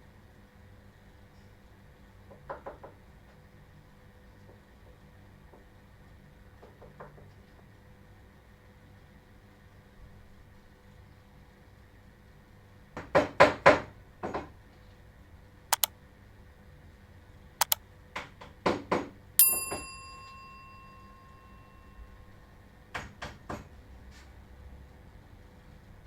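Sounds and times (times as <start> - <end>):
ringing metal clang: 19.4 - 22.3.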